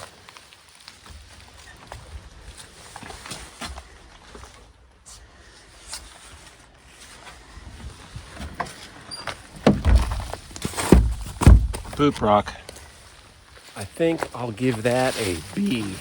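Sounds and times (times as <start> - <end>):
footsteps on leafy rocky trail: 0.0 - 16.0
heavy low thumps: 9.6 - 12.7.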